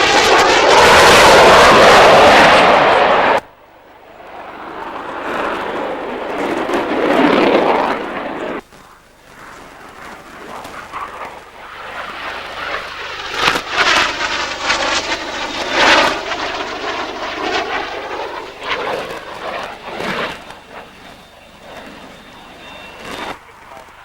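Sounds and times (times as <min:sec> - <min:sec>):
military jet low pass: 0:00.0 - 0:24.0.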